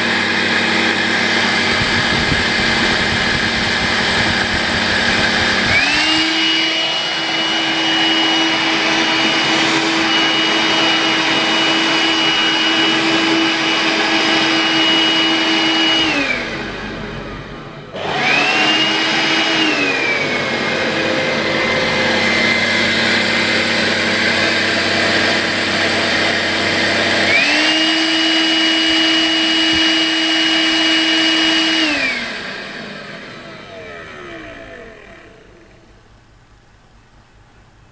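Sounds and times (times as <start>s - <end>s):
stick vacuum whining: 0.0s - 36.3s.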